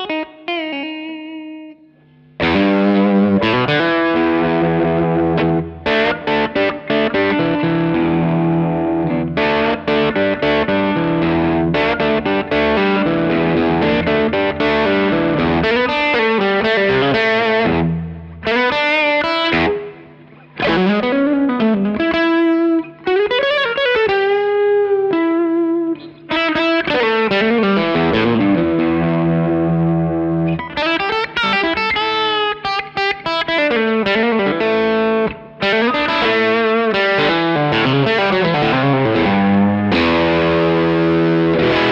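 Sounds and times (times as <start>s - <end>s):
overdriven electric guitar: 0.0s - 41.9s.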